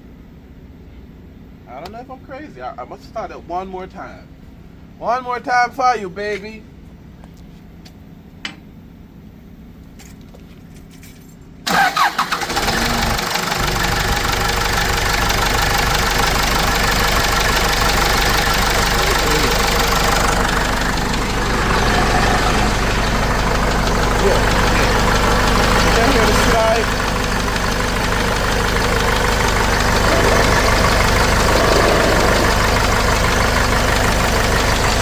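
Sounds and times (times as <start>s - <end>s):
diesel engine starting and idling: 11.7s - 35.0s.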